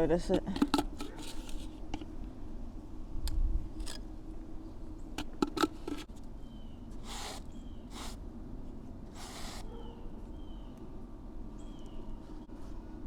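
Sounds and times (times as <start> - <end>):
trowel scraping wet mortar: 7.0 - 8.2, 9.1 - 9.7.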